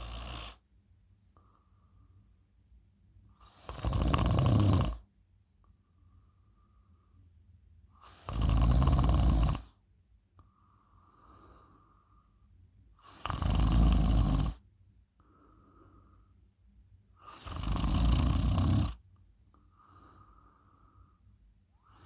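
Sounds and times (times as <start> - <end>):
person snoring: 0.0 - 0.6, 3.6 - 5.0, 8.2 - 9.7, 13.1 - 14.6, 17.3 - 19.0.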